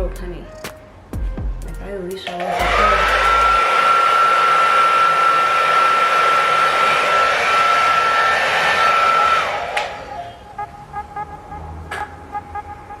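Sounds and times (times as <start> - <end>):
hair dryer running: 2.2 - 10.4.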